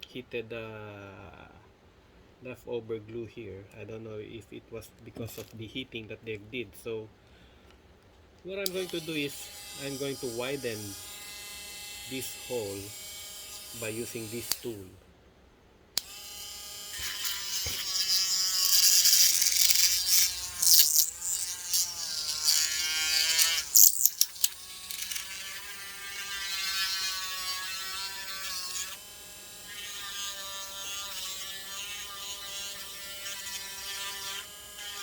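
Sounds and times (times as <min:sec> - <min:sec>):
rotary tool motor whine: 0:16.0 - 0:35.0
grinding hiss: 0:16.3 - 0:25.3.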